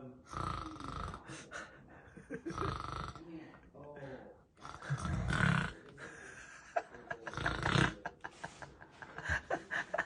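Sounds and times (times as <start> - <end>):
man snoring: 0.3 - 1.3, 2.3 - 3.3, 4.6 - 5.9, 7.2 - 8.1.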